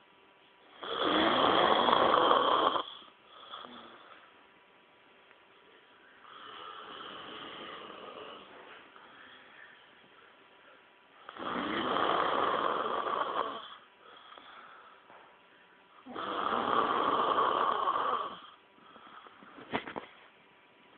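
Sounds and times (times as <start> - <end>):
person snoring: 0.7 - 4.2, 6.2 - 8.6, 11.2 - 14.6, 16.0 - 19.4
quiet breathing: 2.6 - 4.5, 5.6 - 11.8, 12.4 - 20.4.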